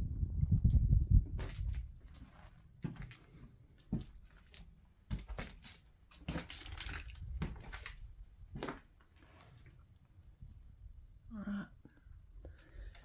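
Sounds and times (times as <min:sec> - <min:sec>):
footsteps crunching on debris: 0:01.4 - 0:08.9.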